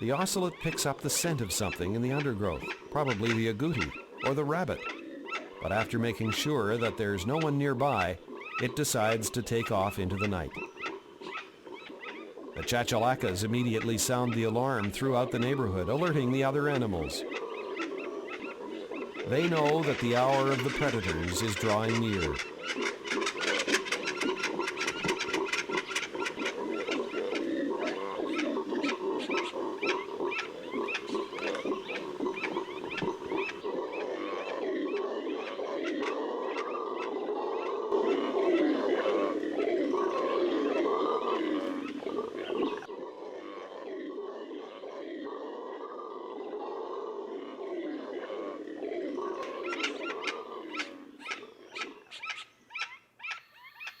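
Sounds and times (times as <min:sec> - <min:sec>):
chachalacas alarm calling: 0:00.0 - 0:43.6, 0:47.3 - 0:54.0
animal low grunting: 0:17.9 - 0:22.5.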